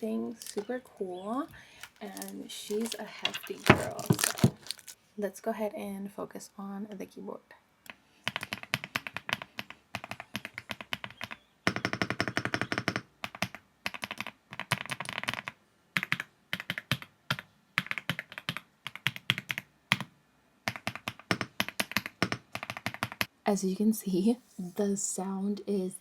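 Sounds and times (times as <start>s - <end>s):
mechanical keyboard typing: 8.3s - 20.1s, 20.7s - 23.3s.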